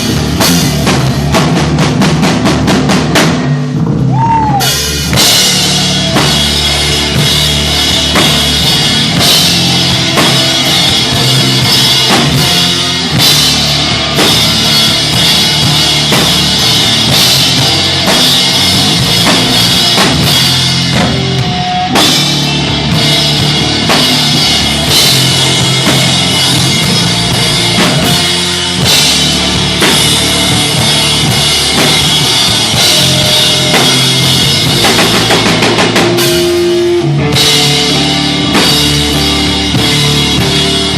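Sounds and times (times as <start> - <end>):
bass guitar: 0.0 - 40.9
distorted guitar: 0.0 - 40.9
drum kit with cymbals: 0.0 - 40.9.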